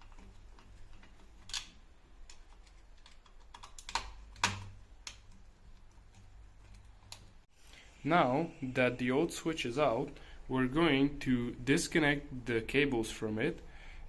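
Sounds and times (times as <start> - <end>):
hand tools and plastic clicks: 0.0 - 7.4.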